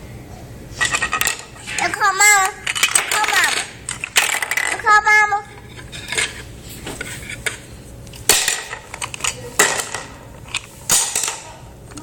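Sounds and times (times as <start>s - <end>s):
toy pots and pans clattering: 0.8s - 4.9s.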